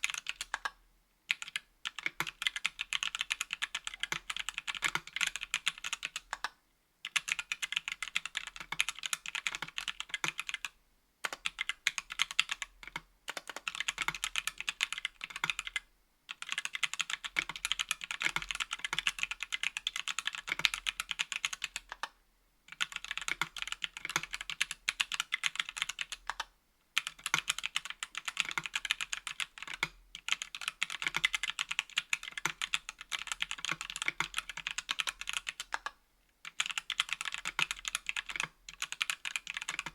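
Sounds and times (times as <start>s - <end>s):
mechanical keyboard typing: 0.0s - 22.1s, 22.7s - 39.9s.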